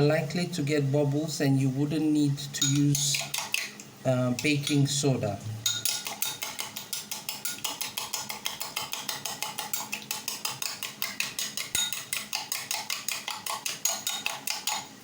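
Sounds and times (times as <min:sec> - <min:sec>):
whisk clicking against bowl: 0:02.6 - 0:04.9, 0:05.6 - 0:14.9.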